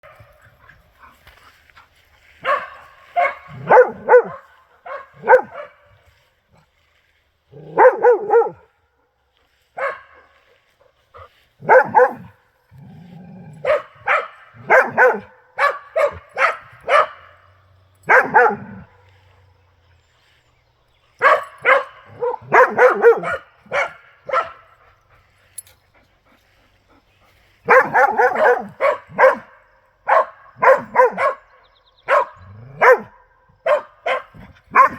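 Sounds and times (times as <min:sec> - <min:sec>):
dog barking: 0:02.4 - 0:06.0, 0:07.6 - 0:08.7, 0:09.7 - 0:10.4, 0:11.2 - 0:12.4, 0:13.6 - 0:19.1, 0:21.2 - 0:24.8, 0:27.6 - 0:34.9.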